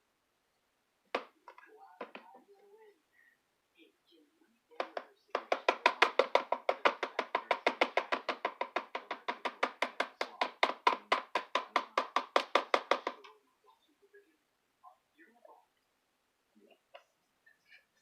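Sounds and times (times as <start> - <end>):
hard object knocking against bowl: 1.2 - 2.4, 4.8 - 13.4.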